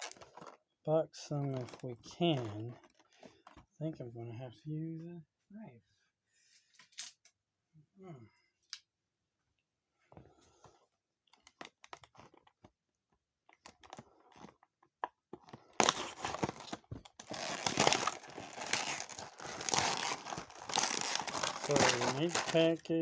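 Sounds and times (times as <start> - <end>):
packaging clicks and rustles: 0.0 - 0.7, 1.4 - 3.7, 11.3 - 12.8, 13.4 - 23.0
packaging crinkling and tearing: 0.0 - 0.7, 1.3 - 3.6, 11.3 - 12.7, 13.5 - 14.7, 15.4 - 23.0.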